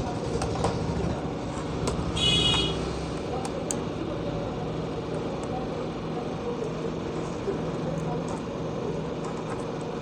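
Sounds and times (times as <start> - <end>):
steady background hum: 0.0 - 10.0.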